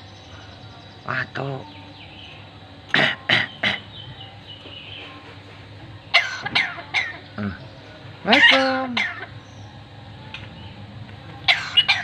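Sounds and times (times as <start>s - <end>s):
talking bird imitating coughs: 2.9s - 4.0s, 6.1s - 7.6s, 8.3s - 9.4s, 11.5s - 12.0s.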